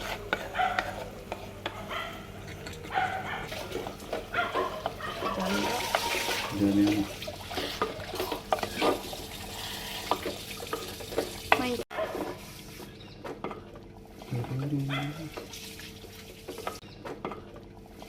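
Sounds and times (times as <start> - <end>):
spoon scraping clay pot: 0.0 - 11.0
light sizzle: 0.0 - 11.8.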